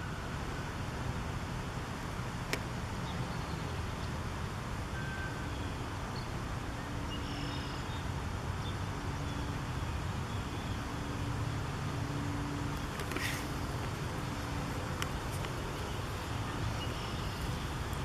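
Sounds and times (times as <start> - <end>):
distant traffic rumble: 0.0 - 18.0
faint bird chirps: 7.0 - 9.5, 15.8 - 17.9.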